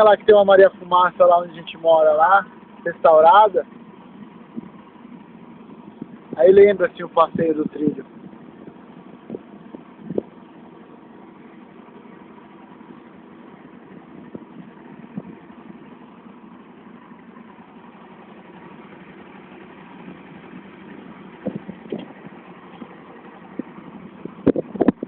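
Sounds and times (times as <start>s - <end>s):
vehicle engine running: 0.0s - 25.0s.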